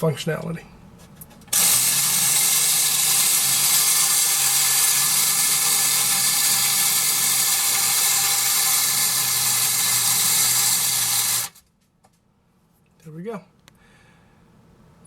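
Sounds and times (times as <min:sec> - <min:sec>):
clockwork toy gears whirring: 0:01.5 - 0:11.6.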